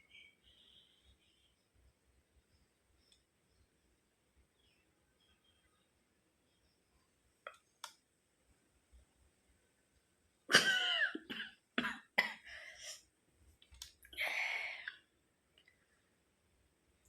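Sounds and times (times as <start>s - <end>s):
woman coughing: 10.5s - 12.5s.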